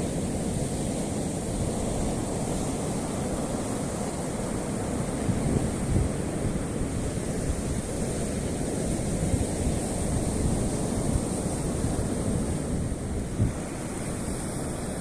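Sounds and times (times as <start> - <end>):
surf washing onto shore: 0.0 - 15.0
wind buffeting microphone: 4.6 - 15.0.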